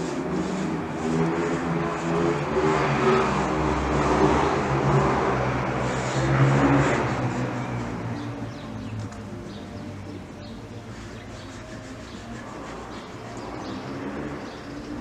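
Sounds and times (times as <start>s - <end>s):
road noise: 0.0s - 15.0s.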